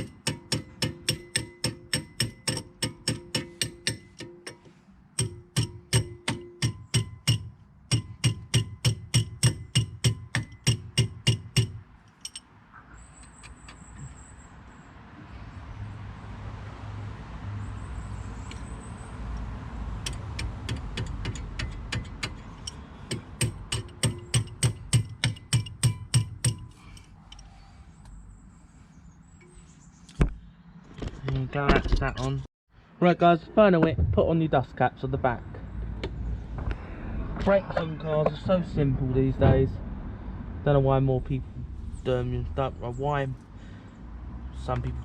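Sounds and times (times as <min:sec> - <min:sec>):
ratchet wrench clicking: 0:00.0 - 0:12.4, 0:20.0 - 0:27.4.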